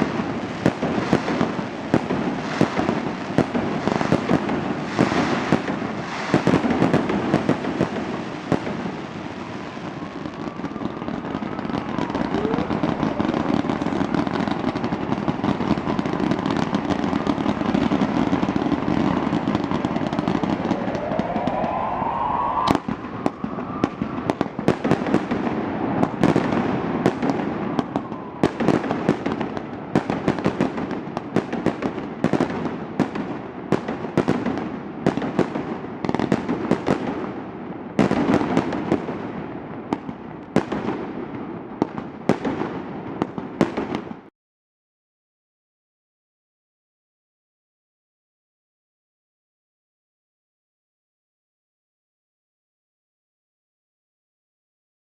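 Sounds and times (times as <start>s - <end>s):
rising firework whistles: 0.0s - 14.9s, 15.9s - 30.1s
fireworks banging and crackling: 0.0s - 44.3s.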